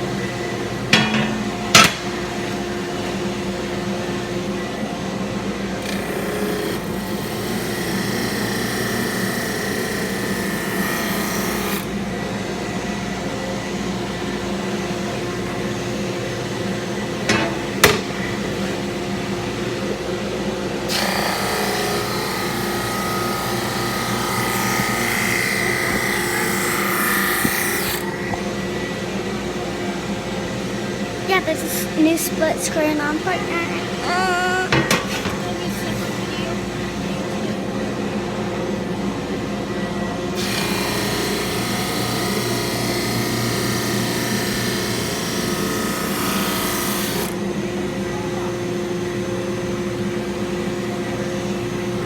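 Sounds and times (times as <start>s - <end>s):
sharp knocks: 1.0s - 2.2s, 17.3s - 18.2s.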